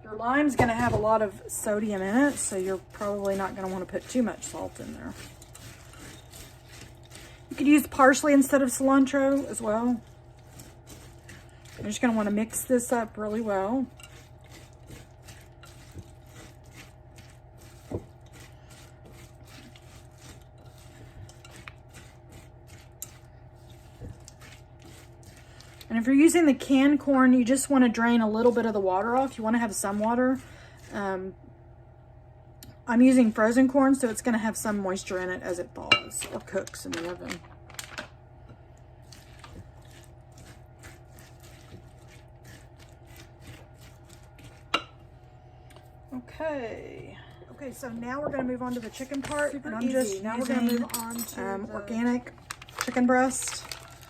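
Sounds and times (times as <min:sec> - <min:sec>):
steady low hum: 0:00.0 - 0:54.0
spoon scraping in a bowl: 0:01.5 - 0:25.9, 0:48.5 - 0:52.1.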